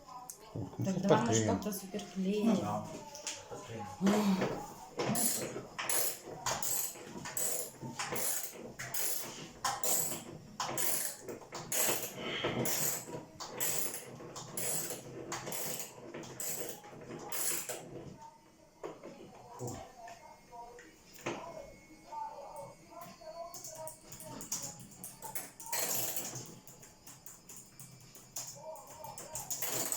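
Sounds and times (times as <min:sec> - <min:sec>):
ratcheting hand tool clicking: 0:05.2 - 0:17.8.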